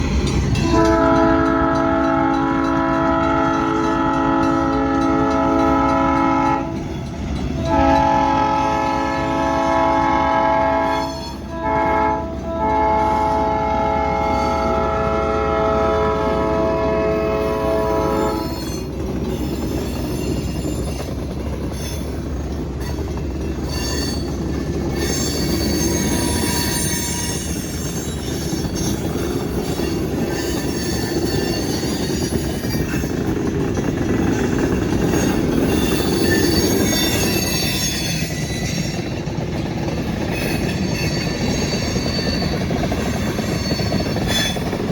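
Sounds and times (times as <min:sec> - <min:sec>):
train rumbling past: 0:00.0 - 0:44.9
train horn chord: 0:00.6 - 0:06.9, 0:07.6 - 0:18.6
wheel squeal: 0:23.6 - 0:33.3, 0:34.3 - 0:39.2, 0:40.2 - 0:44.8.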